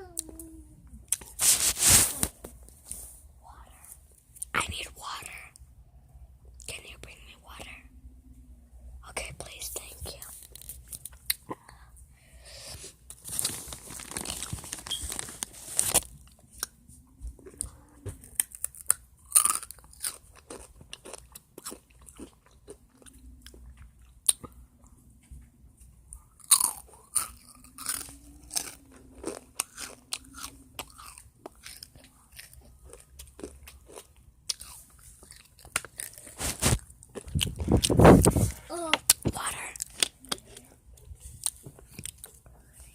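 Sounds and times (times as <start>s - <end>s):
faint low voice hums: 0.0s - 1.1s
crunching and chewing crisp food: 10.1s - 11.9s, 12.5s - 25.0s, 26.2s - 42.9s.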